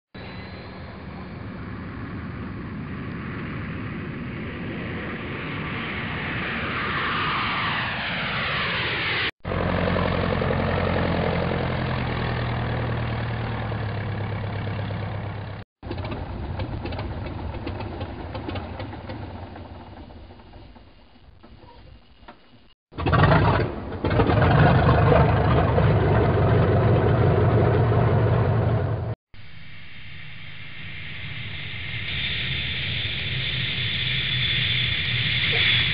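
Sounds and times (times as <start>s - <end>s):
engine humming steadily: 0.2s - 4.6s, 9.4s - 29.6s
aircraft passing with falling whine: 0.2s - 35.9s
rattling clicking engine: 9.5s - 29.1s.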